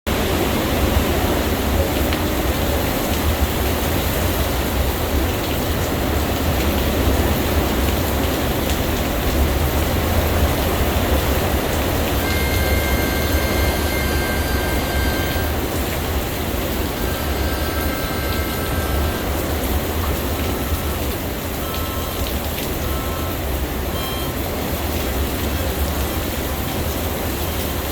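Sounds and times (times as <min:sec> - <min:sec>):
hurricane wind and rain: 0:00.1 - 0:27.9
faint thin whistle: 0:24.0 - 0:24.3.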